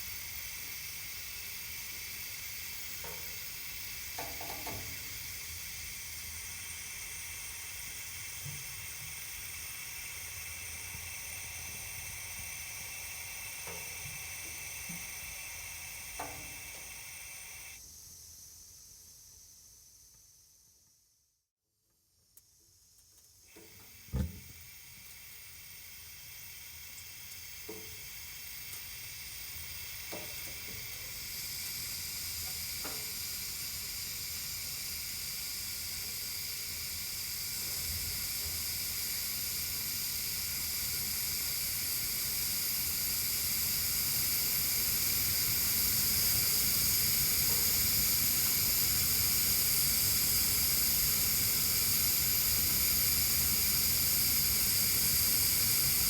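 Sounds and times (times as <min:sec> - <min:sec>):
pressurized gas hissing: 0:00.0 - 0:17.8, 0:23.5 - 0:56.0
sharp thump: 0:24.1 - 0:24.6
faint knocks: 0:24.2 - 0:24.6.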